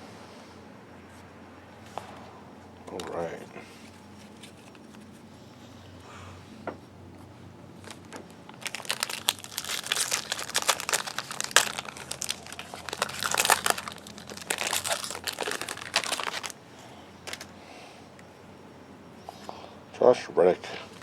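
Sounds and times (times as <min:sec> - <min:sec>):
plastic wrapper tearing and crinkling: 0:07.8 - 0:16.6.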